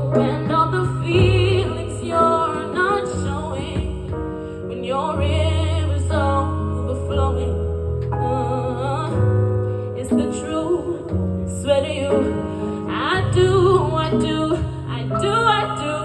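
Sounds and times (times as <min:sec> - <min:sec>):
person singing: 0:00.0 - 0:04.0
deep bass notes: 0:00.0 - 0:16.0.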